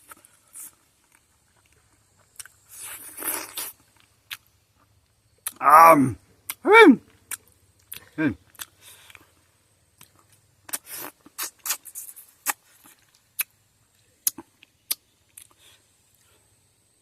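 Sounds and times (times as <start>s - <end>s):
wet chewing mouth clicks: 10.0s - 13.6s.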